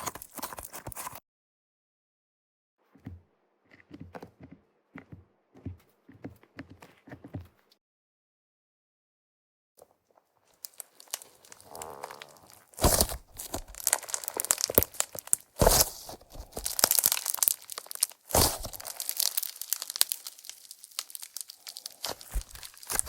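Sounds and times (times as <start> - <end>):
slime crackling and popping: 10.6 - 23.0
slime squishing: 10.6 - 23.0.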